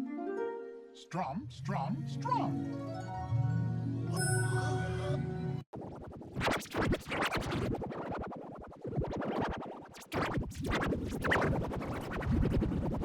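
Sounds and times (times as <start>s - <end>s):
distorted stuttering cartoon music: 5.8s - 13.0s.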